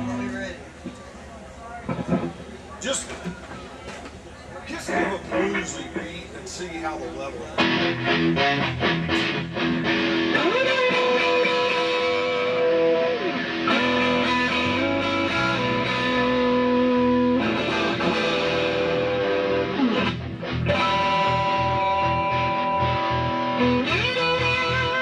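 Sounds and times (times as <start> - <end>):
electric guitar playing slow blues: 7.6 - 25.0.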